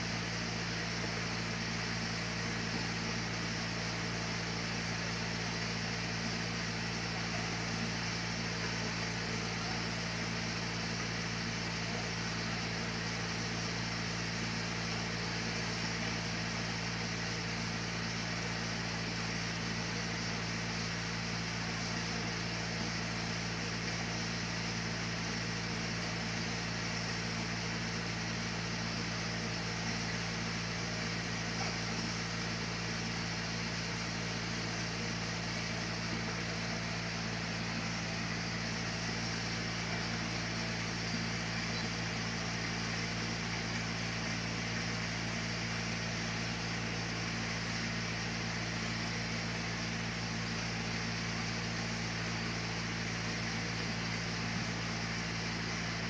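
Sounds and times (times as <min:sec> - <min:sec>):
sawmill machinery drone: 0:00.0 - 0:56.0.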